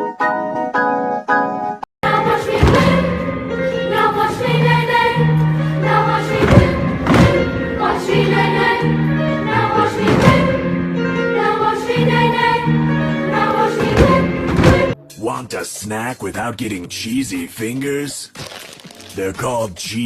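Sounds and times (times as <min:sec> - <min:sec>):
choir singing held chords: 0:02.0 - 0:15.0.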